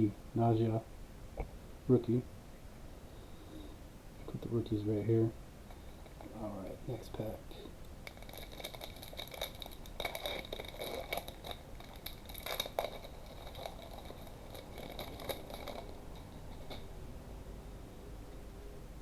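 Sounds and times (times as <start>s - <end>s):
plastic wrapper crinkling and tearing: 7.8s - 16.9s.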